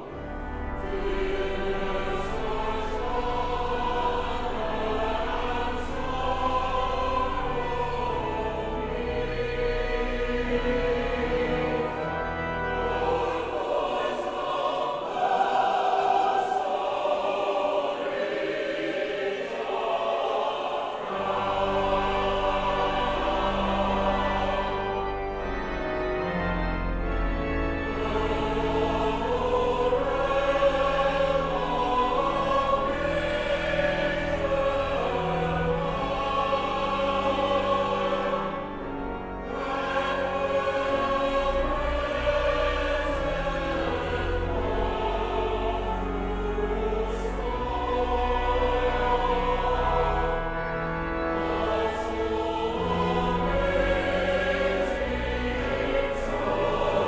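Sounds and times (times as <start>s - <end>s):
choir singing held chords: 0.0s - 57.0s.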